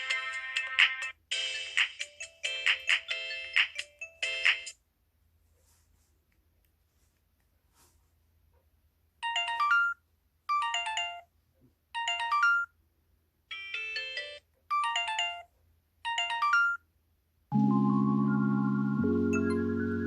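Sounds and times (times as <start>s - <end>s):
phone ringtone chiming melody: 1.3s - 4.7s, 9.2s - 11.2s, 12.0s - 12.7s, 13.5s - 15.5s, 16.1s - 16.8s, 17.5s - 20.0s
mallet-like tune: 17.5s - 20.0s.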